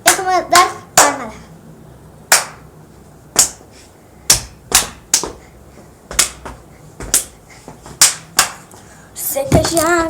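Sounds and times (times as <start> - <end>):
child clapping hands: 0.0 - 1.2, 2.3 - 2.6, 6.2 - 6.4, 8.0 - 8.6.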